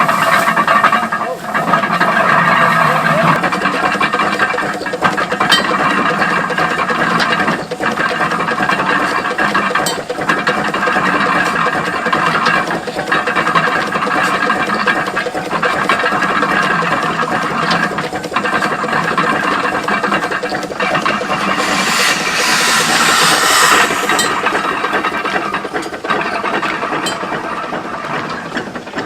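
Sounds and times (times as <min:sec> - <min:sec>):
hay baler clattering: 0:00.0 - 0:21.6
steam traction engine: 0:00.0 - 0:29.0.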